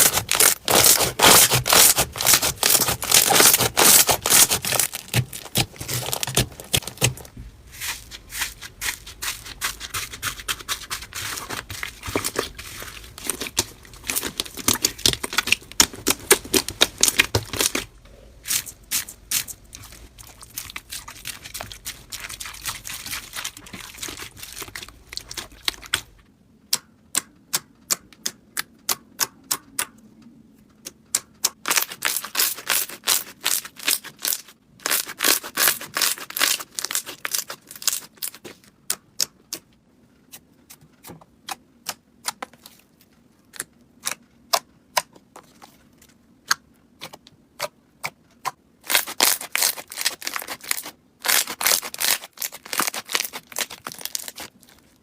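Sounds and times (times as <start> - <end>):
slime crackling and popping: 0.0 - 7.3, 8.7 - 26.1, 31.6 - 39.3, 48.8 - 55.0.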